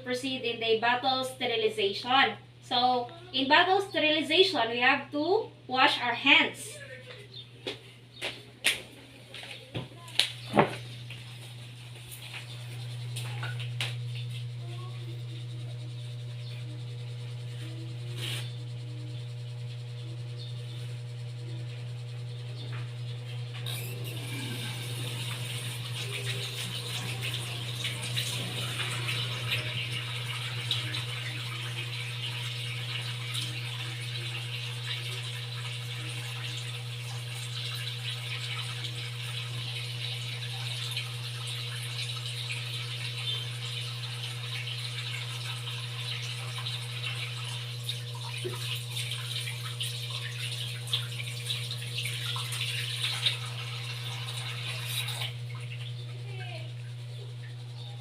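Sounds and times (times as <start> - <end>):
steady low hum: 0.0 - 58.0
tap water running: 7.6 - 58.0.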